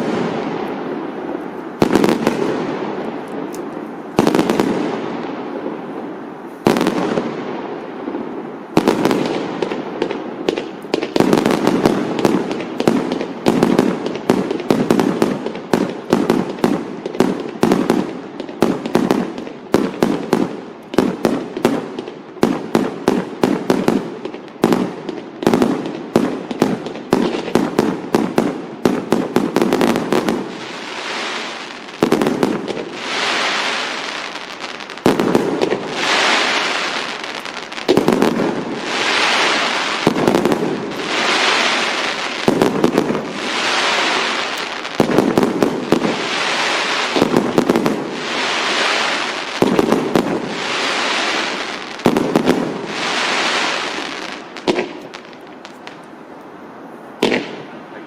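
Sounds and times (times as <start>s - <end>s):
hissing crackling firework bursts: 0.0s - 56.1s.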